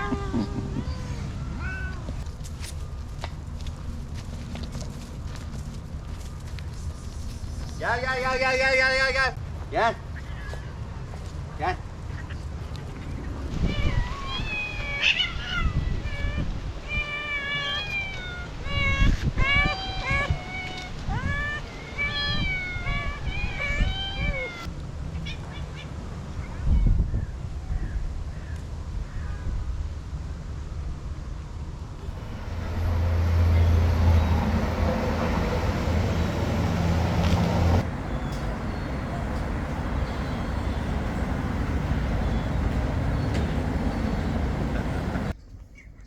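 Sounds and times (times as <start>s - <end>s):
cats meowing: 0.0s - 2.2s, 13.6s - 16.3s, 16.9s - 24.7s
low rumble: 32.0s - 45.3s.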